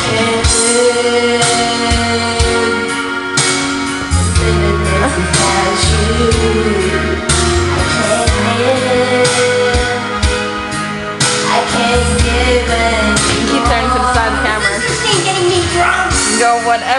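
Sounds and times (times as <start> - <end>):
person singing: 0.0 - 3.4, 4.1 - 10.6, 11.4 - 16.8
bass notes: 0.0 - 16.9
steady drum beat: 12.0 - 16.4.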